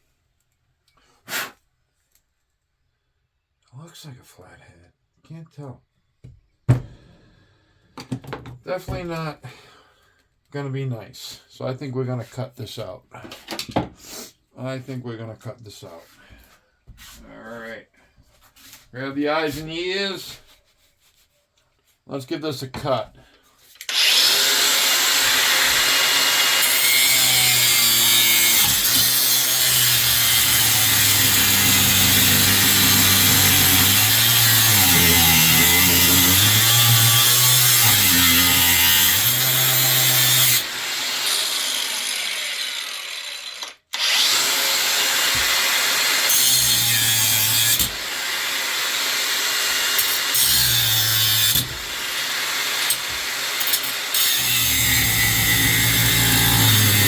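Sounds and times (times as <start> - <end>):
power tool cutting metal: 23.8 - 57.0.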